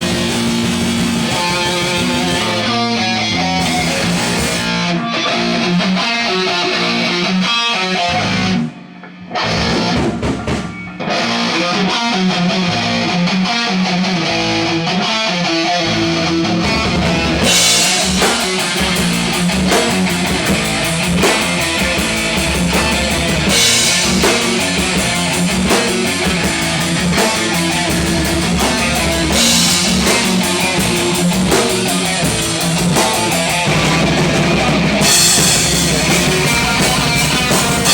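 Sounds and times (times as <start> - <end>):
drum kit: 0.0 - 4.9, 9.5 - 11.5, 15.9 - 37.9
electric guitar riffing: 0.0 - 37.9.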